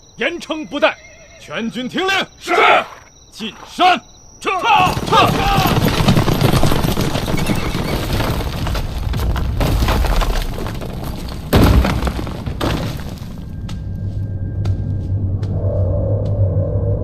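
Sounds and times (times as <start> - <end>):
rock and debris crashing down: 4.6 - 13.6.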